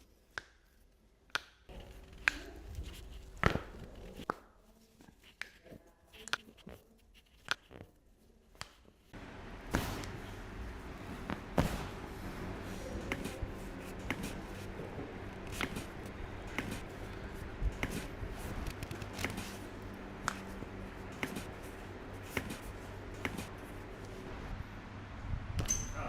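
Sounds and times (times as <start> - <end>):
low steady hum: 9.1 - 26.0
hands rubbing shoulders and back: 10.8 - 24.3.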